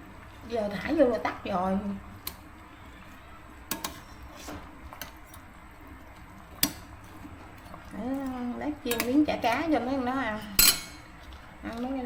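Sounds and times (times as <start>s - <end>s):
kitchenware clicking: 3.7s - 4.1s, 6.6s - 11.1s.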